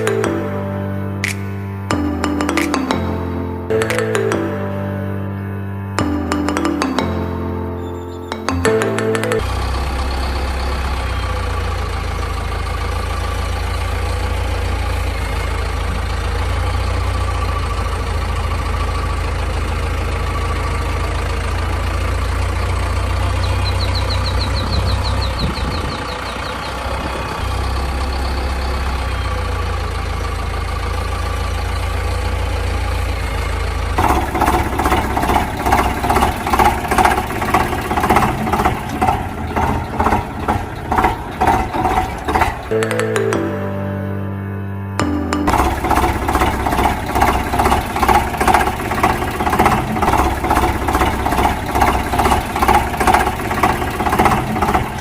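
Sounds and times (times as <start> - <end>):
engine idling: 9.3 - 42.8, 45.4 - 55.0
rhythmic pulsing sound: 45.0 - 55.0.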